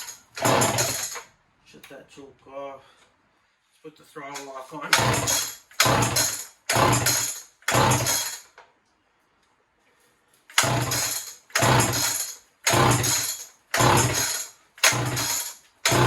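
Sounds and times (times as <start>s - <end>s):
chainsaw pull-start cord: 0.0s - 1.3s, 4.4s - 8.6s, 10.5s - 16.0s.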